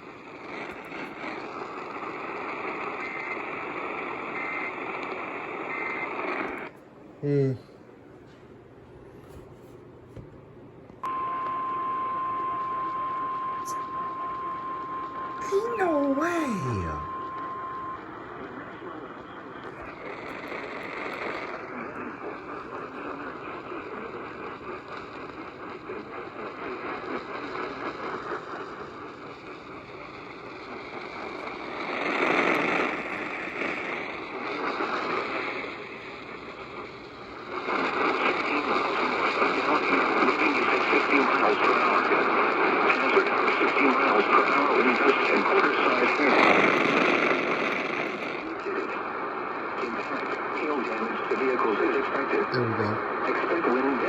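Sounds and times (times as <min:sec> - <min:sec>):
radio static hiss: 0:31.8 - 0:54.0.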